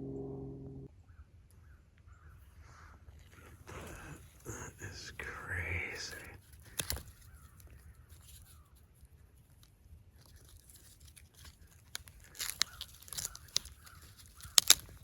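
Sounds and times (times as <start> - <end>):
soil and roots crunching: 10.2 - 15.0.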